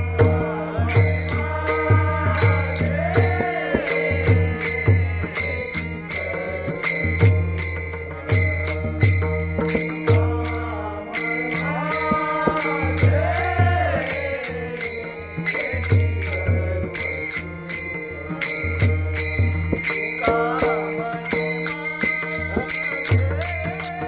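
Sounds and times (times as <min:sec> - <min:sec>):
person singing: 0:00.0 - 0:05.5, 0:20.1 - 0:24.0
hand cymbals clashing: 0:00.0 - 0:24.0.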